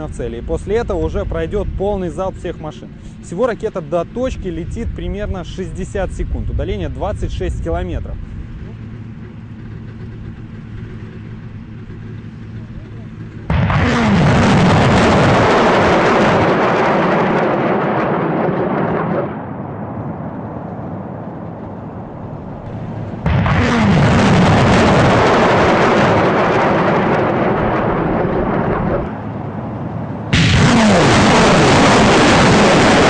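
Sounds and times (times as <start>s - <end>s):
low rumble: 0.0s - 33.0s
rockets launching: 13.4s - 19.8s, 23.1s - 29.2s, 30.3s - 33.0s.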